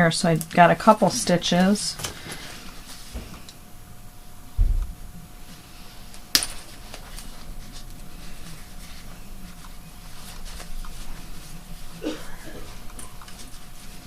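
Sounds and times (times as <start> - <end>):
low thump: 4.6 - 5.0.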